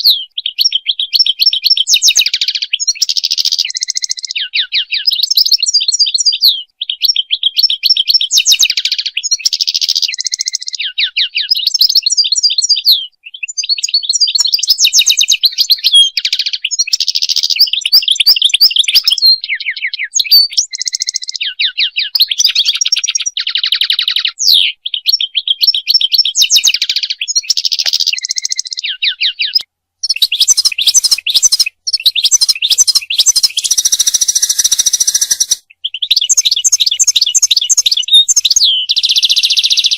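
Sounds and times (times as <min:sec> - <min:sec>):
goldfinch twittering song: 0:00.0 - 0:39.9.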